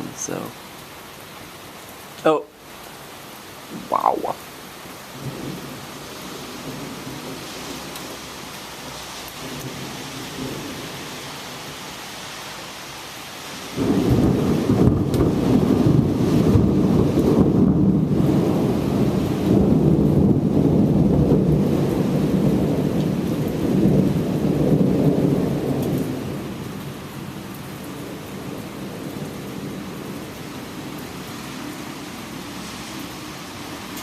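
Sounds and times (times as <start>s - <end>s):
rain hissing: 0.0s - 24.1s, 25.0s - 34.0s
rolling thunder: 13.7s - 26.4s.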